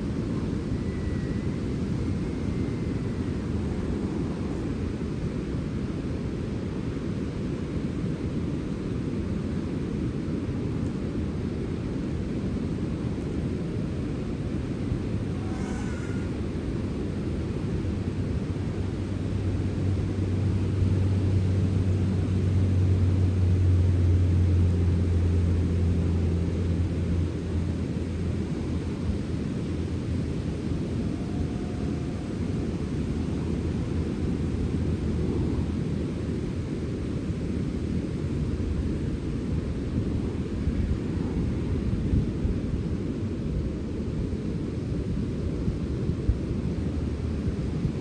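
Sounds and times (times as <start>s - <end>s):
wind rumbling: 0.0s - 7.6s, 13.1s - 43.6s
low hum: 14.4s - 42.8s.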